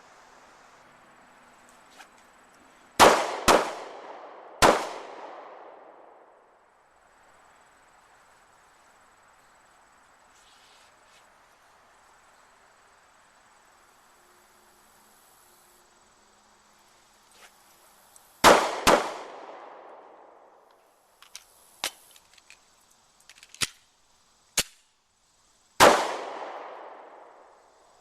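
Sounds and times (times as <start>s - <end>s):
pistol shots with echo: 3.0s - 6.2s, 18.4s - 20.0s, 25.8s - 27.3s
faint sharp cracks and clicks: 23.2s - 23.8s, 24.6s - 24.9s.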